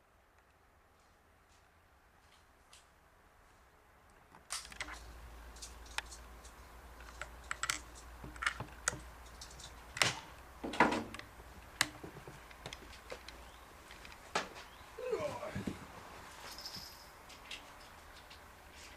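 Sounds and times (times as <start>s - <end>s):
metal parts clicking and knocking: 5.6s - 11.2s.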